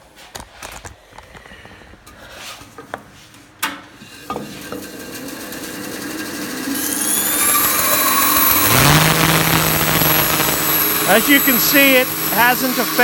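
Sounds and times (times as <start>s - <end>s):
band saw running: 4.6s - 13.0s.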